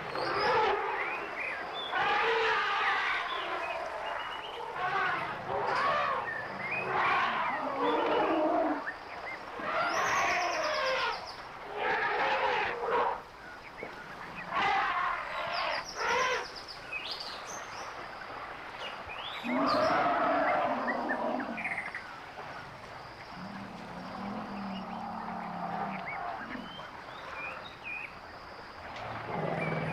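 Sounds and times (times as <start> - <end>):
elephants calling: 0.0 - 8.9, 14.2 - 16.5, 19.4 - 22.1
birds chirping faintly: 0.0 - 29.9.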